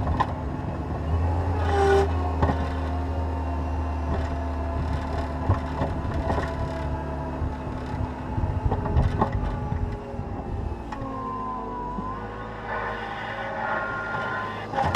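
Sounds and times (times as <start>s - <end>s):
diesel engine running under load: 0.0s - 14.9s
knocks and clatter: 2.4s - 3.0s, 4.0s - 6.9s, 14.1s - 14.9s.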